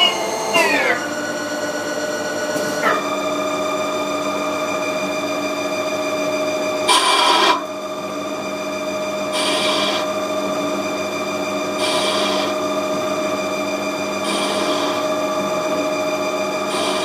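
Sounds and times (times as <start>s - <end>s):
lathe whining: 0.0s - 17.0s.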